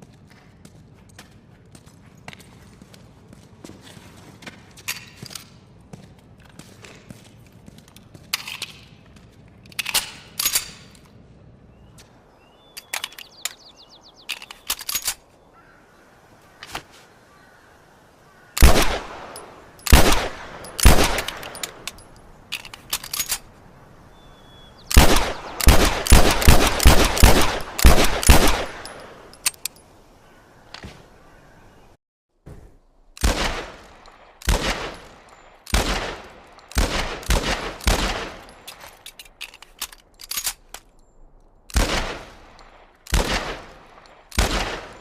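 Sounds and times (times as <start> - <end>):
pistol shots: 18.6 - 21.9, 24.9 - 29.4, 33.2 - 38.5, 41.7 - 45.0.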